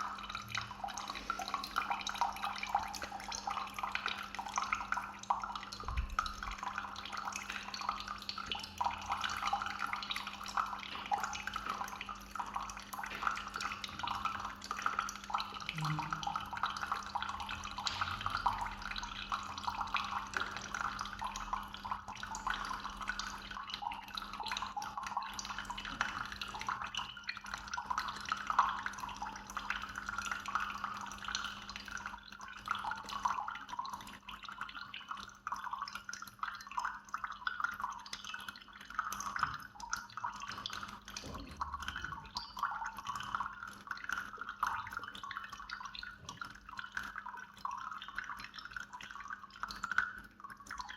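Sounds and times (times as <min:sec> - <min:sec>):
low steady hum: 0:00.0 - 0:38.0
coffee dripping into cup: 0:00.0 - 0:50.9.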